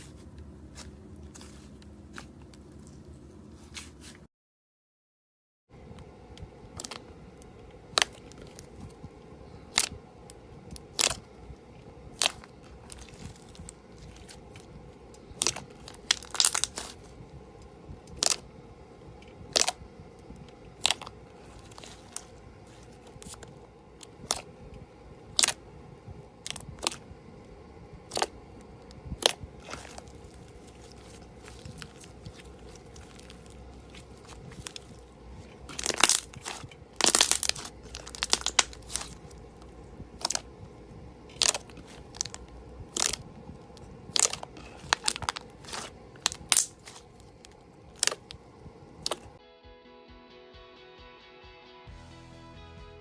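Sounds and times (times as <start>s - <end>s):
slime crunching crackles: 0.0s - 4.1s, 6.8s - 7.1s, 7.9s - 10.0s, 10.7s - 11.3s, 12.1s - 17.2s, 18.1s - 18.5s, 19.5s - 19.8s, 20.7s - 24.5s, 25.3s - 25.6s, 26.4s - 27.0s, 28.1s - 28.4s, 29.2s - 40.6s, 41.2s - 49.4s.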